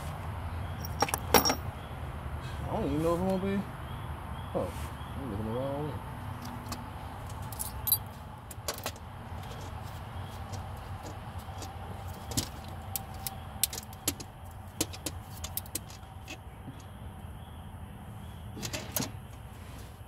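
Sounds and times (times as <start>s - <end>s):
hand tools clinking on metal: 0.8s - 1.6s, 7.3s - 9.0s.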